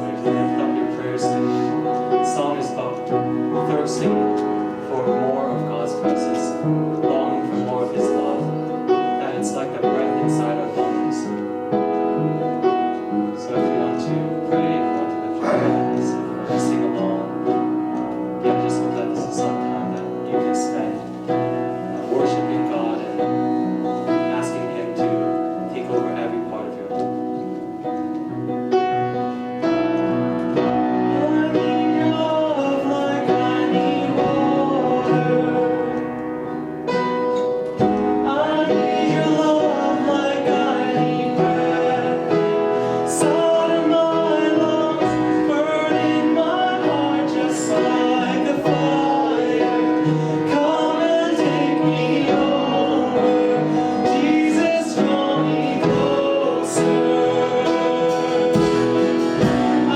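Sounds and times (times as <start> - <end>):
worship music with piano: 0.0 - 59.9
singing: 13.4 - 17.3, 31.0 - 36.2, 37.8 - 59.9.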